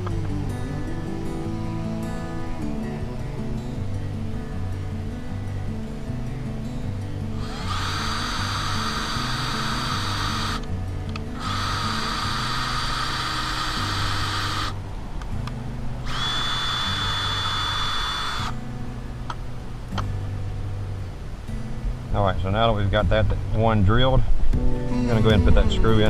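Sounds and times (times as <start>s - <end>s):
background music: 0.0s - 26.0s
cordless drill boring into wood: 7.4s - 10.7s, 11.3s - 14.8s, 16.0s - 18.6s.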